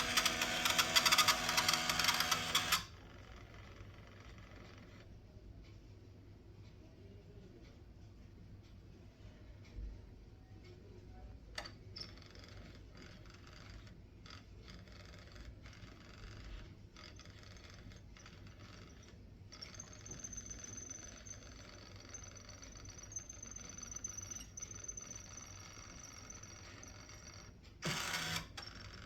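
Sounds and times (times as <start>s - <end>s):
printer whirring and scraping: 0.0s - 2.9s, 19.6s - 28.6s.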